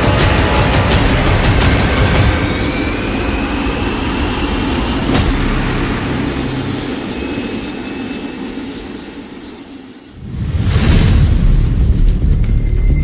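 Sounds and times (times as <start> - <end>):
aircraft turbine engine whine: 0.0 - 10.2.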